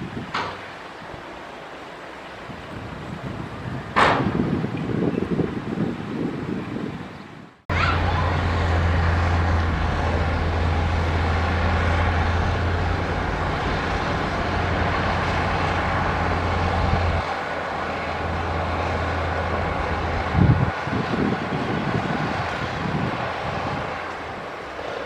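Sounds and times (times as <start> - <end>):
engine rumble: 7.6 - 25.0
heavy machinery diesel engine drone: 7.7 - 25.0.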